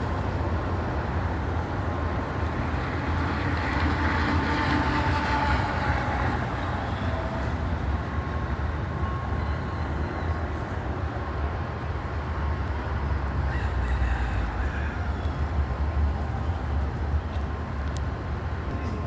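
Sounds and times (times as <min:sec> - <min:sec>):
city traffic rumble: 0:00.0 - 0:19.0
rooster crowing faintly: 0:13.5 - 0:15.3.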